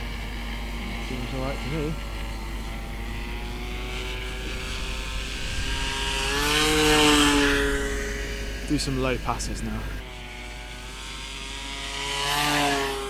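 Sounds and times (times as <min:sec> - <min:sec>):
electric motor and propeller whine: 0:00.0 - 0:13.0.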